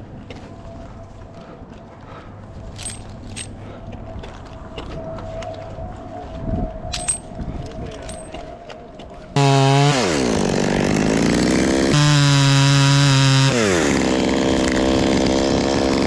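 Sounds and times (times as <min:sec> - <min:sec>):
metal climbing hardware clinking: 0:02.7 - 0:03.6, 0:06.9 - 0:08.4.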